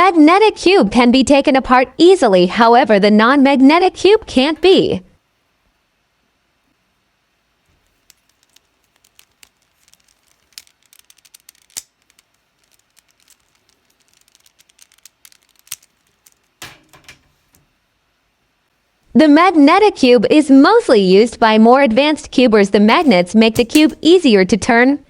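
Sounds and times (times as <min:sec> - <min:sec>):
plastic cube pieces clicking: 0:07.8 - 0:17.3, 0:22.9 - 0:24.2.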